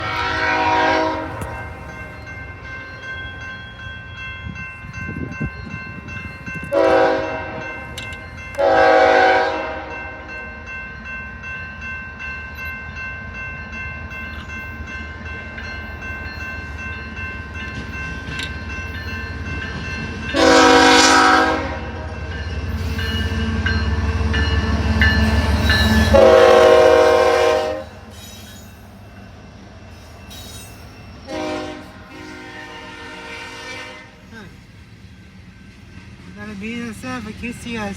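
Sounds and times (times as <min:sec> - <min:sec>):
locomotive horn blasts: 0:00.0 - 0:01.8, 0:06.7 - 0:07.8, 0:08.6 - 0:10.3, 0:20.3 - 0:22.1, 0:26.0 - 0:28.0, 0:31.3 - 0:34.3.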